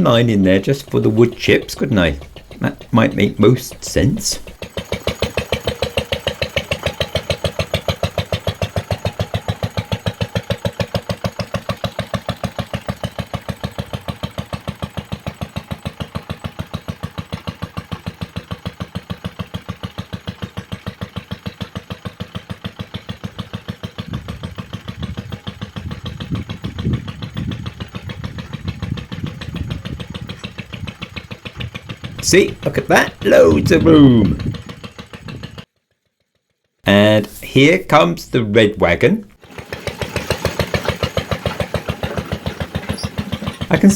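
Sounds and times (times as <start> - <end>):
uneven low rumbling: 0.0 - 10.7, 22.9 - 35.6
locomotive engine running: 0.0 - 35.7, 36.9 - 43.9.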